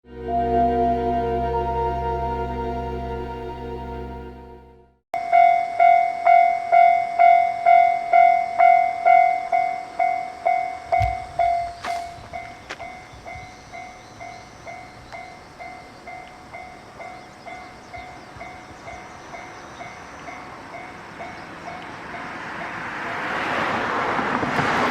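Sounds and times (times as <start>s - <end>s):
thump: 11.0s - 12.3s.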